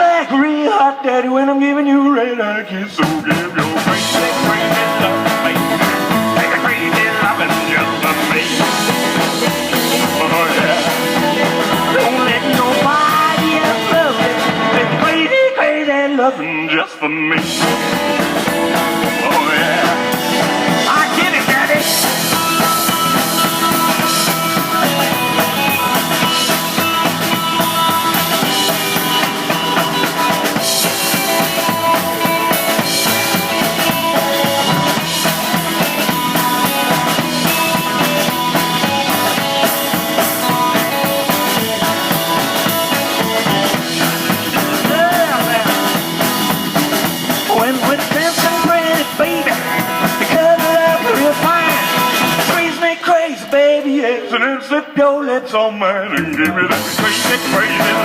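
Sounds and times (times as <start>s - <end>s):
rock band playing: 2.8s - 54.4s, 56.0s - 58.0s
drum kit driving beat: 3.0s - 15.5s, 17.3s - 54.0s, 56.1s - 58.0s
bending guitar notes: 3.8s - 15.5s, 17.4s - 52.6s.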